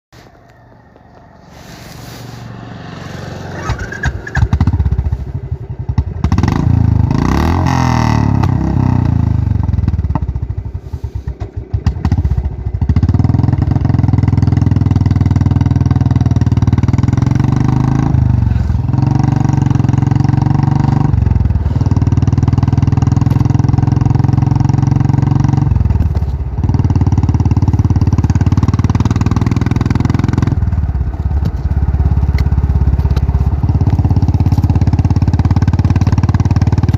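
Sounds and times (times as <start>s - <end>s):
motorcycle engine thumping: 3.5s - 6.6s, 9.6s - 15.6s, 21.5s - 36.9s.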